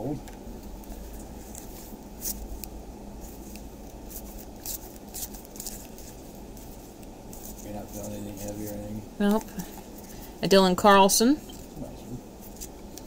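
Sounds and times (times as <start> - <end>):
steady low hum: 0.0 - 13.0
cards clicking and rustling: 0.8 - 10.2, 12.5 - 13.0.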